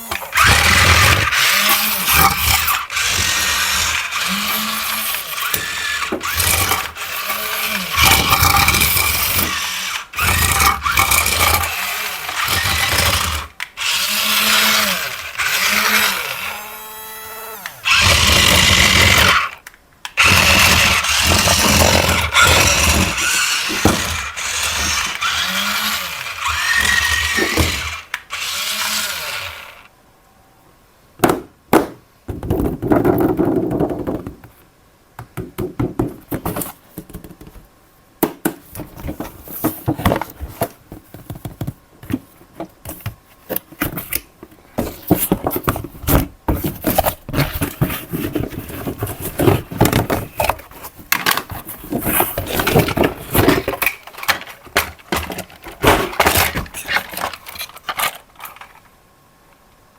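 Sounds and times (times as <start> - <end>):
toy electric motors whirring: 0.0 - 29.9, 46.9 - 58.8.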